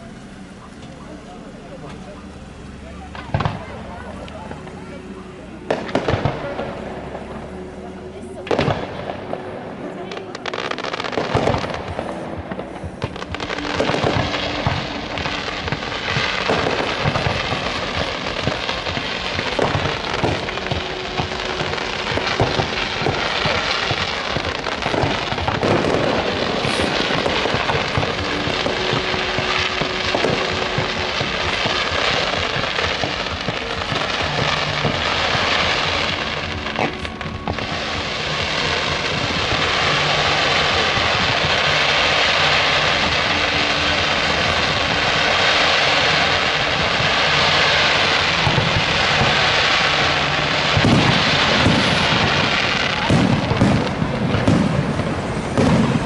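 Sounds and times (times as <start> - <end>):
fireworks bursting and crackling: 0.0 - 56.0
music: 2.7 - 56.0.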